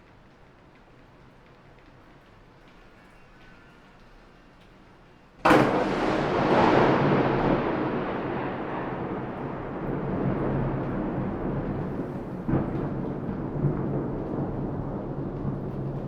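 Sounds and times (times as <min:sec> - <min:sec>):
faint steady rain: 0:00.0 - 0:16.0
thunderclap rolling into rumble: 0:05.4 - 0:16.0.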